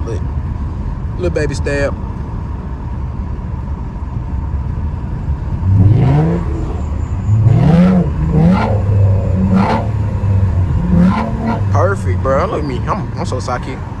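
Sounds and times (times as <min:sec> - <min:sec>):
car engine and exhaust revving: 0:05.0 - 0:14.0.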